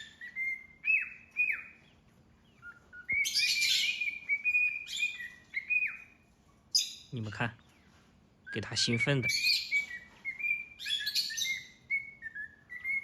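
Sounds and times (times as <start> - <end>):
parrot whistling: 0.0 - 1.8, 2.6 - 6.1, 9.3 - 13.0.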